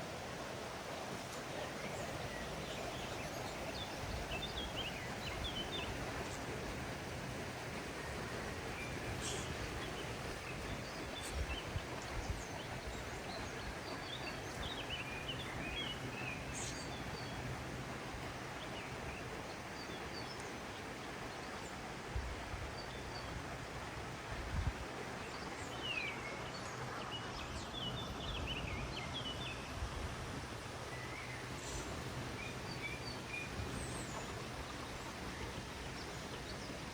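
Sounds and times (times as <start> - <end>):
outdoor background hiss: 0.0 - 36.9
small birds chirping: 0.8 - 7.1, 7.9 - 21.8, 30.9 - 36.9.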